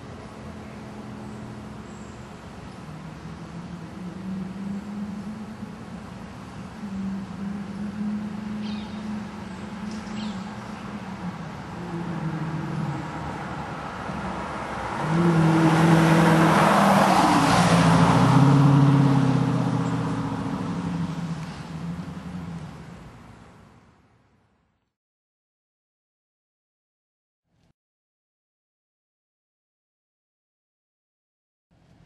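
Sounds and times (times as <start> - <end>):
car engine accelerating hard: 11.0 - 23.6.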